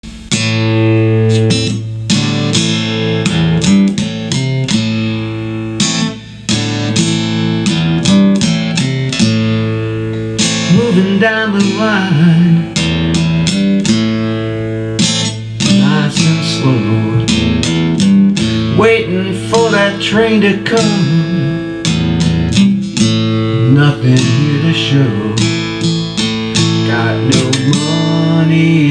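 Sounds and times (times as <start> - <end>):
slow blues guitar: 0.0 - 28.9
low bass line: 12.0 - 19.5.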